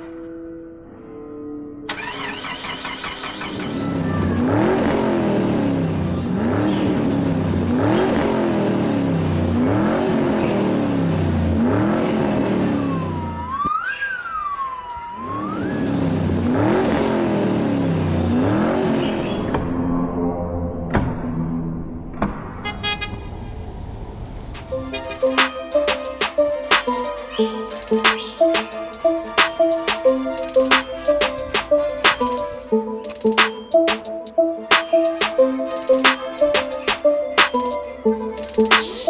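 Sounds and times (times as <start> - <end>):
siren-like whoop: 12.8 - 16.2
engine revving: 15.4 - 19.0.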